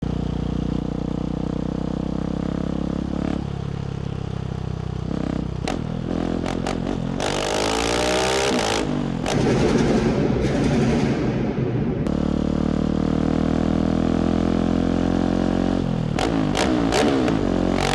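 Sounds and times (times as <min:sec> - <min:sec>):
motorcycle engine revving: 0:00.0 - 0:17.9
exhaust cracks: 0:08.4 - 0:13.6.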